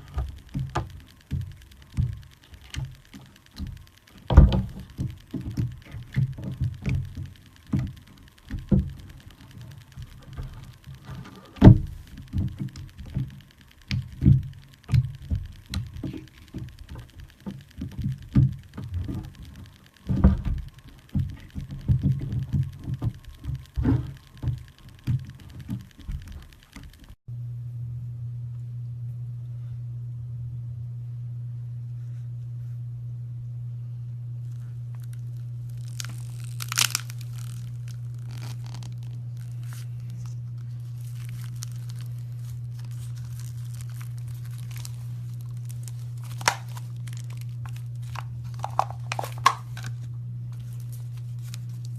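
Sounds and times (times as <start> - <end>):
steady low hum: 0.0 - 51.9
slime squelching: 34.5 - 51.9.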